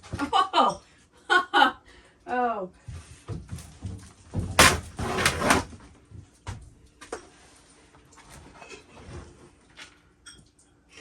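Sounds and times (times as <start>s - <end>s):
knocking and scraping: 4.5s - 5.7s.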